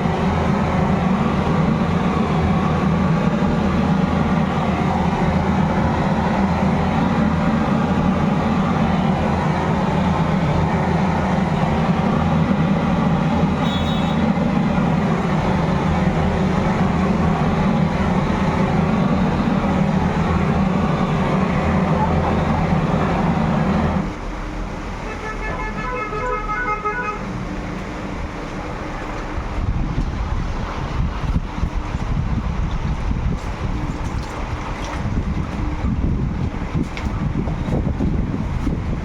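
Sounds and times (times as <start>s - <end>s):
horn beeping short toots: 13.6s - 14.3s, 25.1s - 27.3s.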